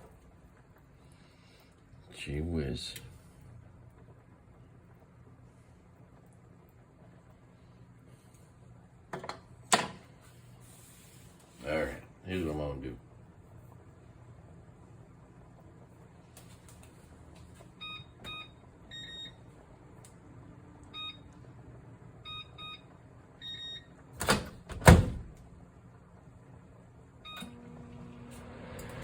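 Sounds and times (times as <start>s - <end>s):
microwave hum and fan: 0.0s - 29.0s
microwave button beeps: 17.8s - 19.4s, 20.9s - 21.4s, 22.2s - 23.9s, 27.2s - 27.7s.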